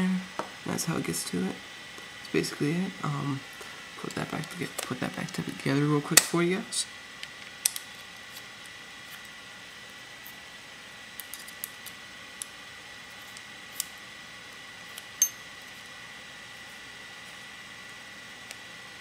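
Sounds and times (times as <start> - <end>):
metallic clink with ring: 15.2 - 15.4.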